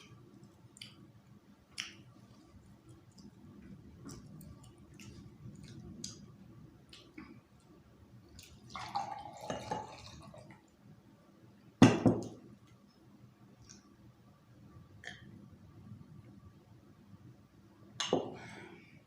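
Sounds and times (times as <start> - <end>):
wet mouth chewing smacks: 1.7 - 6.3.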